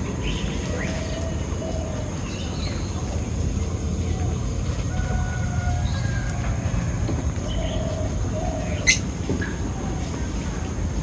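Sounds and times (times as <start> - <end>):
steady low rumble: 0.0 - 11.0
whistled bird calls and chirps: 7.4 - 9.1.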